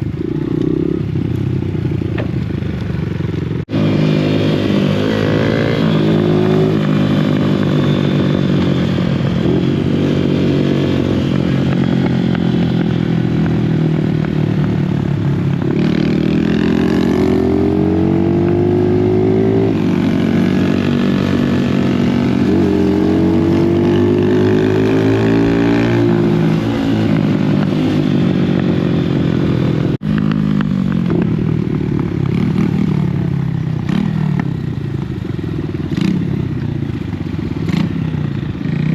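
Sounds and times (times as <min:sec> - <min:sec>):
dirt bike engine revving: 0:03.7 - 0:12.1, 0:15.6 - 0:28.4.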